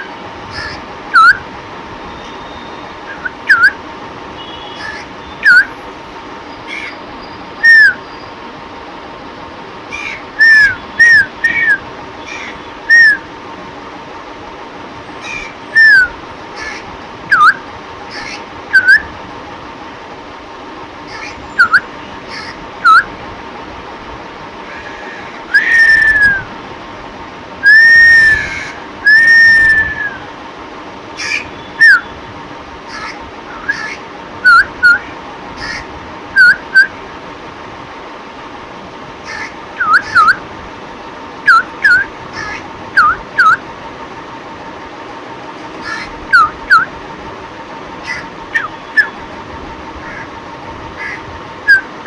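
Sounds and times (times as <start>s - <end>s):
whistle-like calls: 0.0s - 3.8s, 4.4s - 5.8s, 6.5s - 8.4s, 10.4s - 13.3s, 15.3s - 16.2s, 17.3s - 19.1s, 21.2s - 22.0s, 22.8s - 23.2s, 25.0s - 26.5s, 27.6s - 30.3s, 31.2s - 32.2s, 33.0s - 35.2s, 36.4s - 37.0s, 39.8s - 40.5s, 41.4s - 43.7s, 45.9s - 47.0s, 48.1s - 49.3s, 51.6s - 52.0s.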